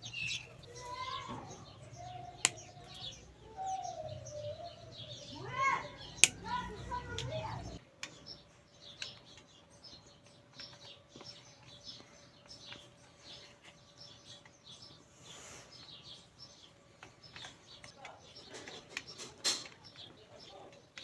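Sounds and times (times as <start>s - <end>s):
small birds chirping: 0.0s - 21.0s
light clicks: 6.2s - 8.2s.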